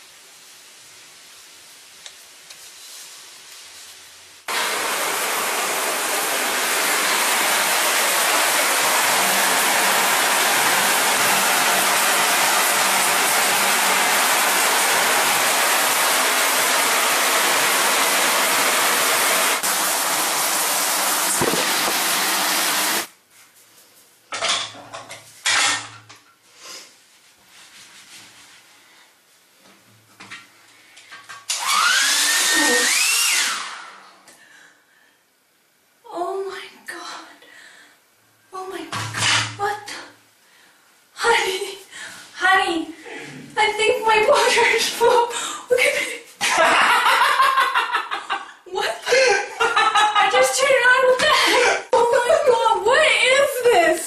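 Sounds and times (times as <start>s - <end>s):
hair dryer running: 4.5s - 23.1s, 31.5s - 34.0s.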